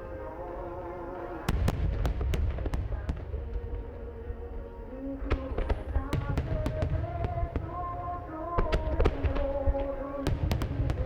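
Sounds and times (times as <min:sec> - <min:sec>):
music playing: 0:00.0 - 0:10.9
fireworks bursting with sharp cracks: 0:01.4 - 0:04.2, 0:05.2 - 0:11.0.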